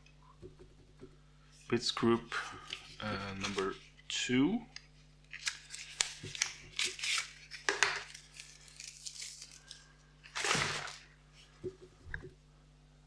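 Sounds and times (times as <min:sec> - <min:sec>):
packaging rustling and crinkling: 0:05.3 - 0:11.1.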